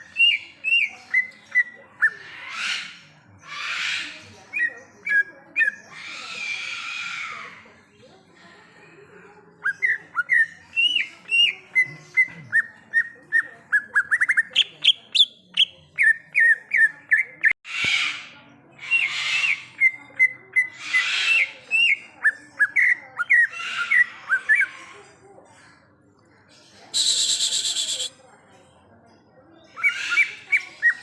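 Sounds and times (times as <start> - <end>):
harsh rasping bird calls: 0.0 - 7.6, 9.5 - 26.0, 26.6 - 28.2, 29.6 - 31.0
bird singing whistled notes: 26.9 - 28.1.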